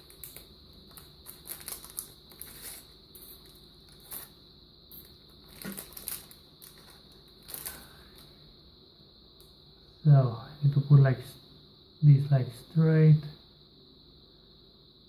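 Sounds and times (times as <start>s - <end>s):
rustling and clicking of small parts: 0.0s - 8.3s
thin high-pitched whine: 0.0s - 15.0s.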